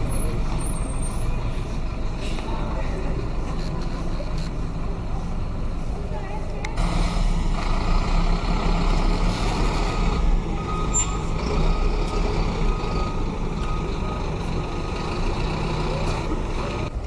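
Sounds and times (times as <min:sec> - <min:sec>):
vehicle engine rumbling: 0:00.0 - 0:17.0.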